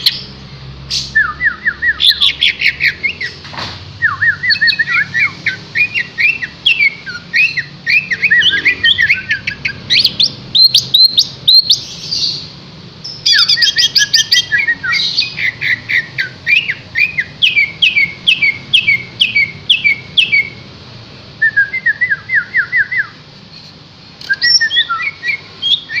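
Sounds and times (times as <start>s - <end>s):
bird song chirps and whistles: 0.9s - 3.4s, 4.0s - 20.6s, 21.4s - 23.2s, 24.2s - 26.0s.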